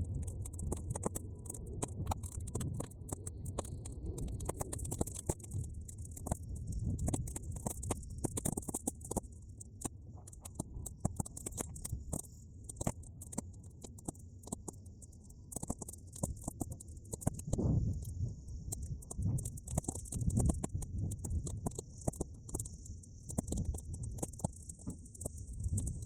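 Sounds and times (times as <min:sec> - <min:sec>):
wind rumble on microphone: 0:00.0 - 0:08.8, 0:17.2 - 0:26.0
bonfire crackling and popping: 0:00.1 - 0:14.7.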